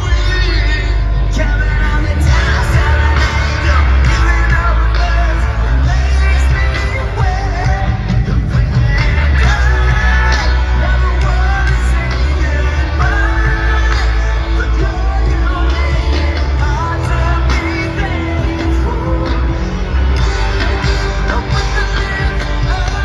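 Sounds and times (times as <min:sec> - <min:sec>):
heavy bass line: 0:00.0 - 0:23.0
person singing: 0:00.0 - 0:23.0
rock music: 0:00.0 - 0:23.0.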